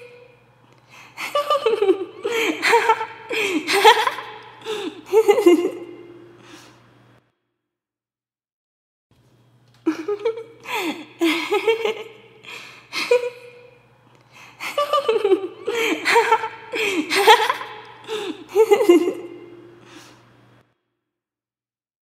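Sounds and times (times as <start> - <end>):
person giggling: 1.1 - 6.4, 9.8 - 13.8, 14.6 - 19.8.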